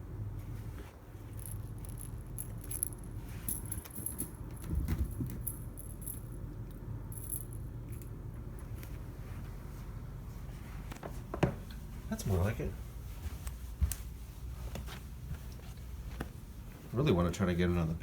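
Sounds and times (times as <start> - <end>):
steady low hum: 0.0 - 18.0
cat toy jingling and rattling: 1.2 - 6.3.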